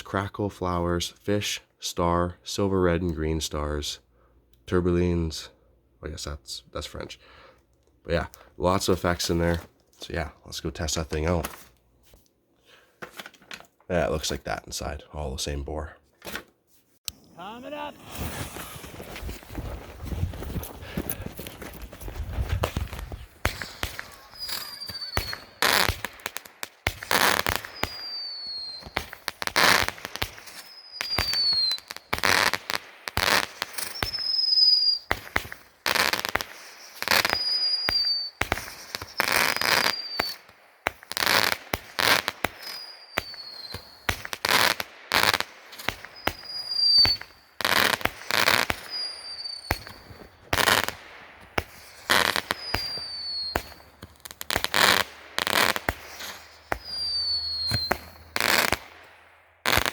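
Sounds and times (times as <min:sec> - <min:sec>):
fireworks cracks and bursts: 0:17.1 - 0:59.9
falling firework whistle: 0:17.4 - 0:19.8, 0:22.7 - 0:26.0, 0:27.0 - 0:32.5, 0:33.2 - 0:40.5, 0:41.3 - 0:50.9, 0:51.7 - 0:53.9, 0:54.8 - 0:58.7.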